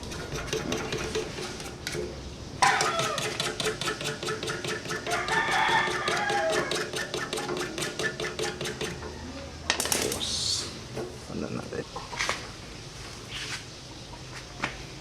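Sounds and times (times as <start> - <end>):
fast rhythmic scraping on metal: 0.0 - 9.2
rooster crowing: 2.6 - 3.6, 4.8 - 7.5, 8.7 - 9.8.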